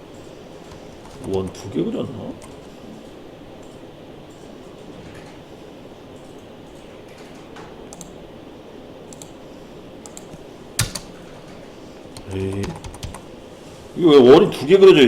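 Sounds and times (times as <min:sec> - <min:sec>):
background hum: 0:00.0 - 0:15.0
keyboard and mouse clicks: 0:00.7 - 0:01.6, 0:06.2 - 0:08.2, 0:09.1 - 0:09.4, 0:10.0 - 0:11.5, 0:12.1 - 0:13.2.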